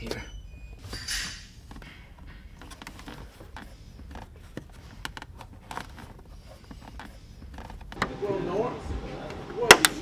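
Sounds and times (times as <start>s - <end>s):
hands handling wiring: 0.0s - 8.2s, 9.7s - 10.0s
steady low hum: 7.2s - 10.0s.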